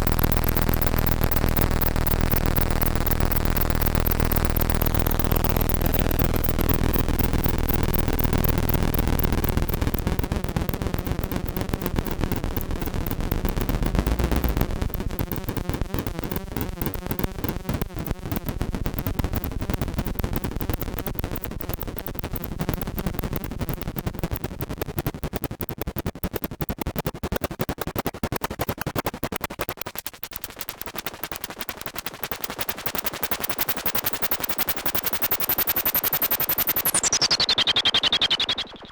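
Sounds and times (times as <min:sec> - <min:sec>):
deep synth bass: 0:00.0 - 0:15.8
harsh pulsing synthesizer: 0:00.0 - 0:21.5.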